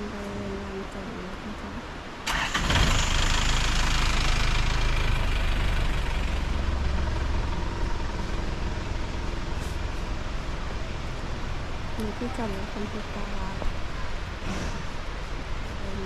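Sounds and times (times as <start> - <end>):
vehicle engine running: 0.0 - 16.0
hiss: 14.4 - 15.1.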